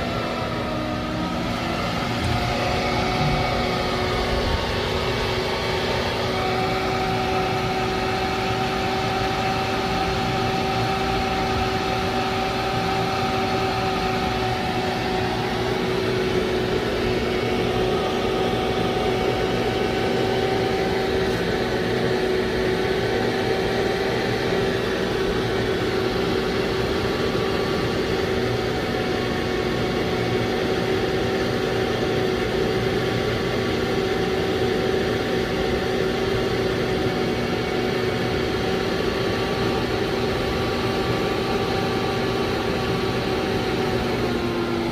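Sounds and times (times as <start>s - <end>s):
machine humming: 0.0s - 44.9s.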